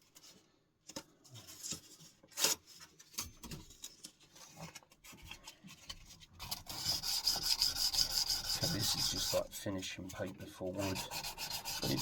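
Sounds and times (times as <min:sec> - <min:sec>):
sandpaper scraping on steel: 0:06.4 - 0:09.5, 0:10.2 - 0:12.0.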